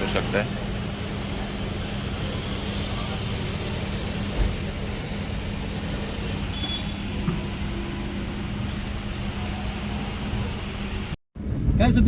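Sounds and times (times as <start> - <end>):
machine hum: 0.0 - 11.2.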